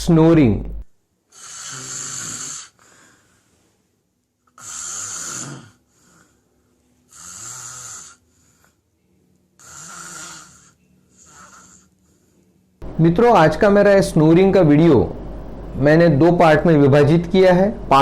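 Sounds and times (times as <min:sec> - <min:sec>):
person snoring: 0:01.3 - 0:03.4, 0:04.5 - 0:06.5, 0:07.1 - 0:08.8, 0:09.6 - 0:12.3
faint breath: 0:02.6 - 0:04.0, 0:08.0 - 0:09.0, 0:10.5 - 0:12.7.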